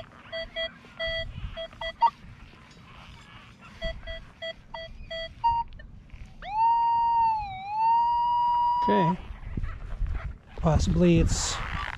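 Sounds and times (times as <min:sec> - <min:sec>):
high metal detector beep: 0:00.0 - 0:02.2, 0:03.8 - 0:05.8, 0:06.4 - 0:09.2
metal detector beeping: 0:00.0 - 0:02.2, 0:02.9 - 0:05.8, 0:06.4 - 0:09.2.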